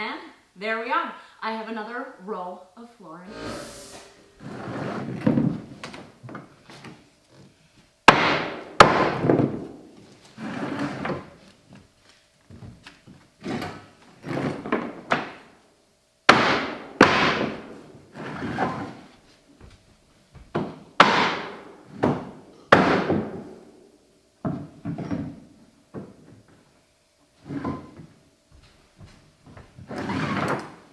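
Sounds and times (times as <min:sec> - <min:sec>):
mallet striking floor nailer: 0:08.1 - 0:09.7, 0:16.3 - 0:17.8, 0:20.7 - 0:23.5.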